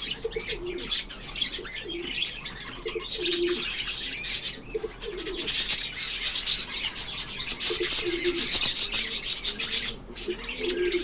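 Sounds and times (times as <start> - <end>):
low cooing: 0.0 - 1.0, 2.8 - 3.7, 4.7 - 5.6, 7.6 - 11.0
high chirping of small birds: 0.0 - 11.0.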